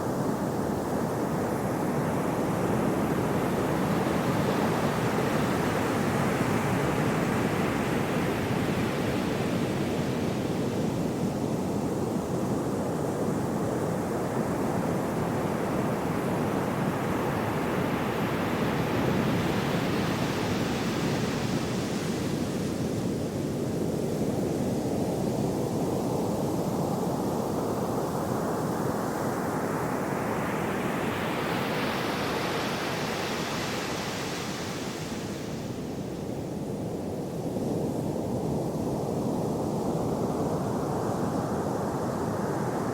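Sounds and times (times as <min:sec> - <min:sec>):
sea waves washing ashore: 0:27.4 - 0:42.9.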